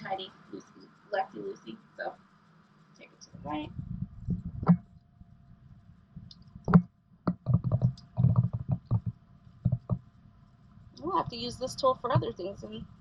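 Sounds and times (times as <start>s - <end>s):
low handling thumps: 6.2s - 10.1s, 11.0s - 12.8s.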